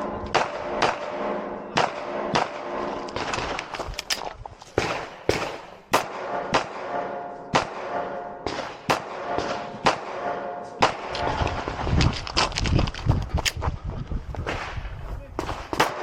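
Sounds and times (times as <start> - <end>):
pistol shots: 0.1 - 12.0, 15.4 - 16.0.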